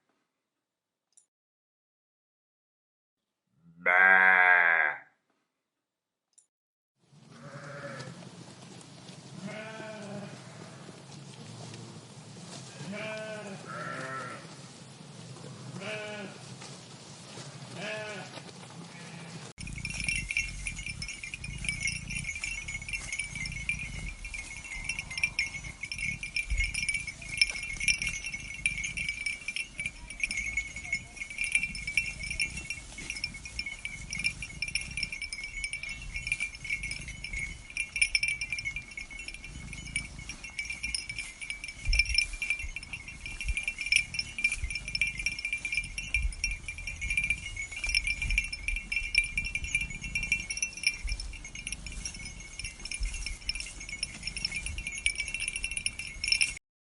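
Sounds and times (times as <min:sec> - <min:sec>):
sheep bells jingling: 0:19.2 - 0:56.6.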